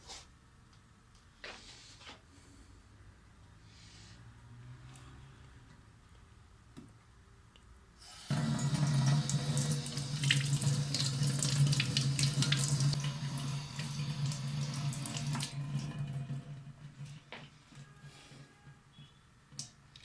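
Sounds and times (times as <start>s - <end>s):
tap water running into sink: 8.3s - 17.1s.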